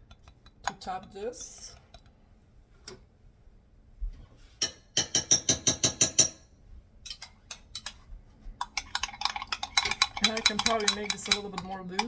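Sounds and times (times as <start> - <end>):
spoon clinking against bowl: 8.6 - 12.0.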